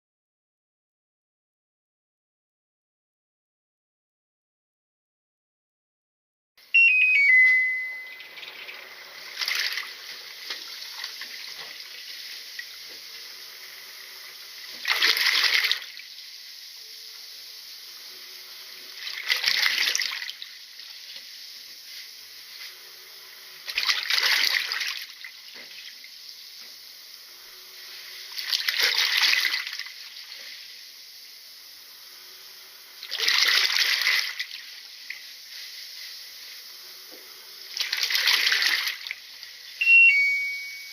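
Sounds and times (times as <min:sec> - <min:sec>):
washing machine beep: 0:06.7 - 0:08.4, 0:39.8 - 0:40.9
water splashing in washing machine: 0:08.3 - 0:13.1, 0:14.2 - 0:16.1, 0:18.9 - 0:21.3, 0:23.6 - 0:26.1, 0:28.2 - 0:30.7, 0:33.0 - 0:35.2, 0:37.7 - 0:39.6.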